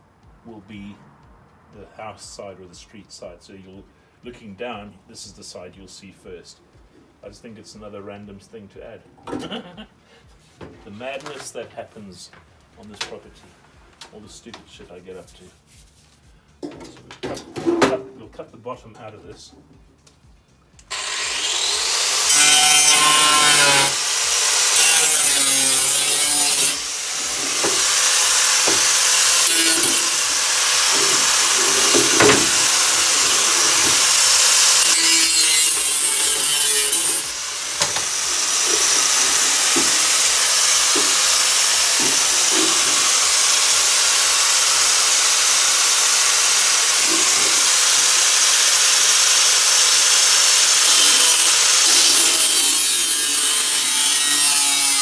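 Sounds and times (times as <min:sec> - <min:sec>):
power tool cutting container: 0:20.9 - 0:55.0.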